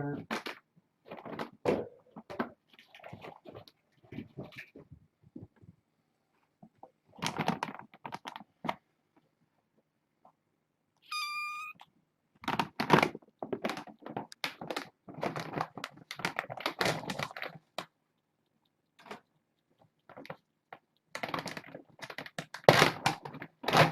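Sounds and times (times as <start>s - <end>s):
kitten mewing: 11.0s - 11.8s.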